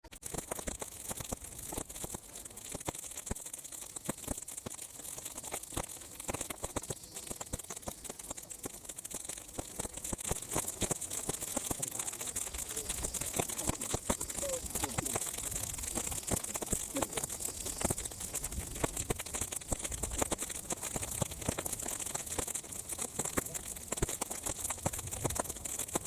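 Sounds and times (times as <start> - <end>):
fire crackling and popping: 0.0 - 26.0
high-pitched hiss: 11.8 - 15.2.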